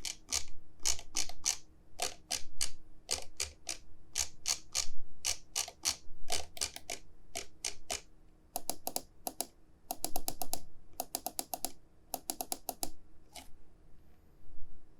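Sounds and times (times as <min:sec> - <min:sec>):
mouse buttons clicking: 0:08.6 - 0:13.5.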